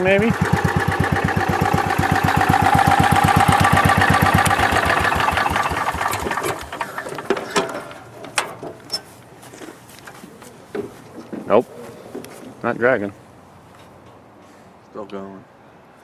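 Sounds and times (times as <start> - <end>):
lawn tractor engine running: 0.0 - 9.2.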